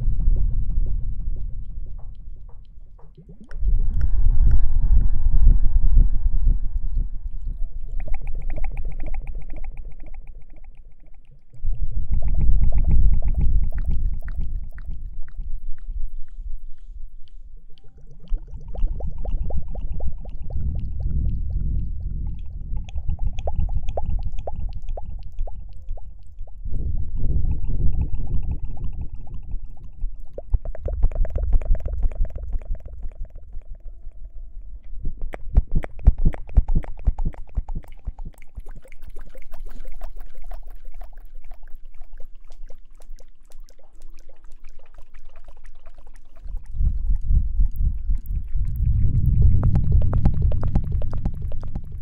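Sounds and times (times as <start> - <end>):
wet rubbing and squishing: 35.3 - 47.0.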